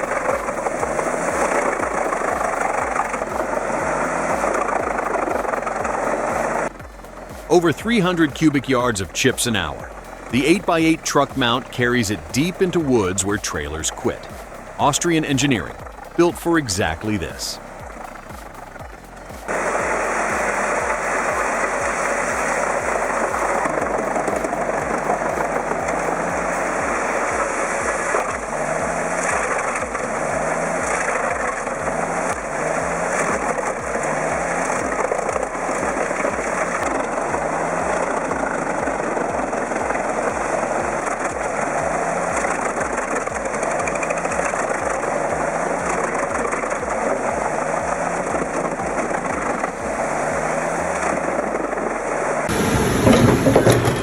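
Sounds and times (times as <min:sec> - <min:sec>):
wood chipper running: 0:00.0 - 0:54.0.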